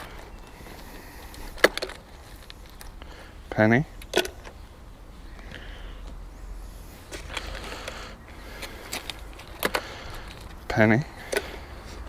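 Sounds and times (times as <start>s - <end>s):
sharp metallic clicks: 4.0s - 4.6s, 7.1s - 11.7s.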